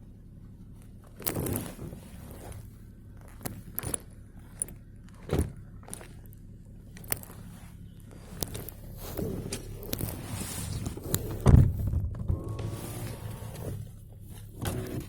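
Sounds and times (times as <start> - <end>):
low steady hum: 0.0 - 15.0
handling knocks and rustling: 0.6 - 15.0
thump: 5.3 - 5.6, 11.4 - 12.4.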